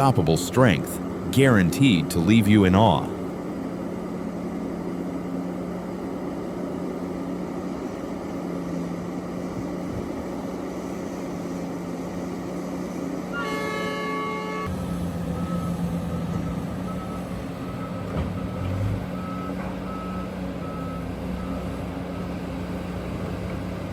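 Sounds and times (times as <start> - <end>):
excavator diesel engine humming: 0.0 - 23.9
multi-tone warning horn: 13.3 - 14.8.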